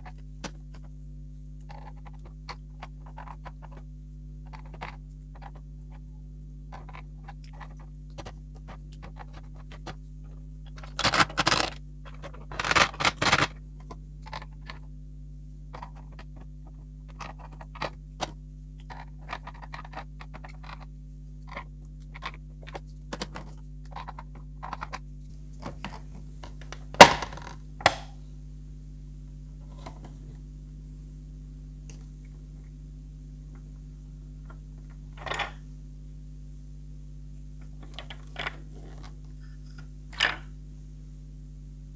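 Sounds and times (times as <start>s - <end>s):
plastic parts clicking and tapping: 22.7s - 28.2s, 29.6s - 30.4s, 34.4s - 35.8s, 37.6s - 40.6s
steady low hum: 25.2s - 41.9s.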